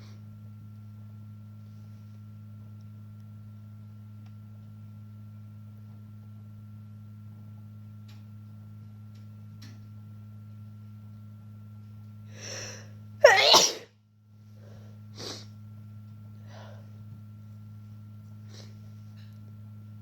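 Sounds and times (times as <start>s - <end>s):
low electrical hum: 0.0s - 20.0s
woman sneezing: 13.2s - 13.9s
breaths and sniffs: 14.6s - 15.6s, 18.4s - 18.9s.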